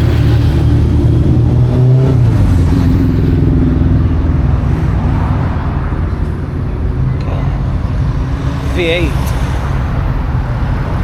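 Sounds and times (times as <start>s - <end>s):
engine running at low revs: 0.0s - 11.0s.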